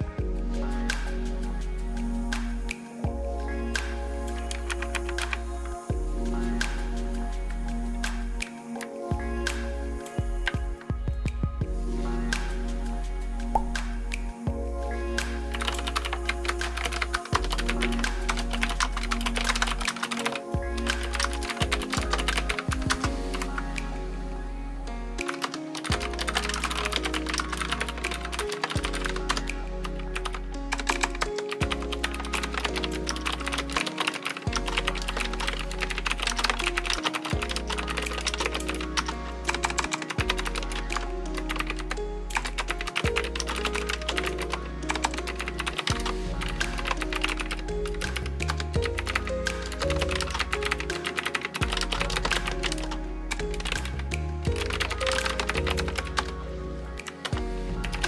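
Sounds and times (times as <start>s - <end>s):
background music with bass line: 0.0s - 58.0s
mechanical keyboard typing: 15.5s - 23.0s, 25.3s - 29.5s, 30.1s - 53.0s, 53.6s - 53.9s, 54.6s - 56.3s.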